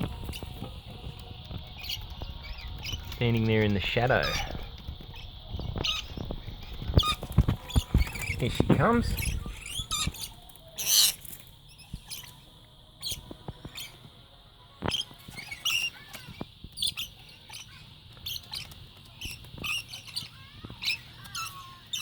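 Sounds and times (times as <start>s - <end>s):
clicks and scratches: 0.0s - 12.4s
parrots chirping and squeaking: 0.0s - 22.0s.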